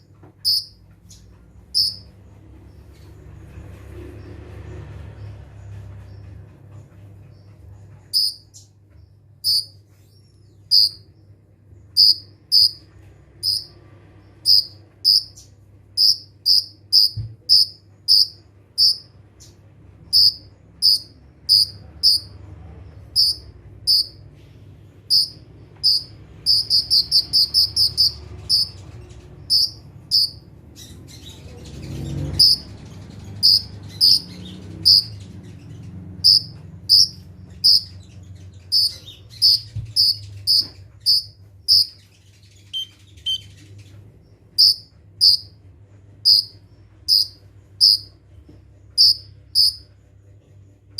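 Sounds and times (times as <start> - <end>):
bird chipping calls: 0.0 - 2.2, 8.0 - 8.8, 9.4 - 11.2, 11.9 - 13.8, 14.4 - 22.4, 23.0 - 24.3, 25.0 - 45.6, 46.2 - 48.2, 49.0 - 49.9.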